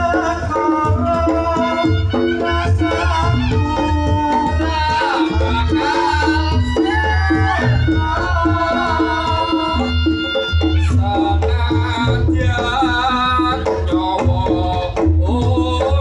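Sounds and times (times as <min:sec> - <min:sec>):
drums beating fast pattern: 0:00.0 - 0:16.0
reedy wind instrument melody: 0:01.4 - 0:11.4.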